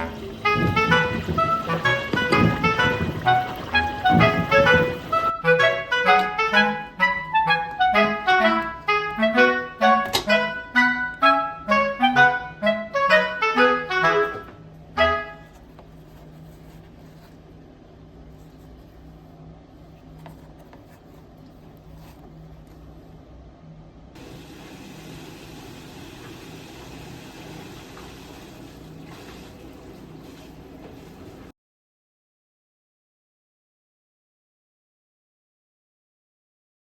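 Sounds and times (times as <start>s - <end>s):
clarinet-like melody: 0.0s - 16.0s.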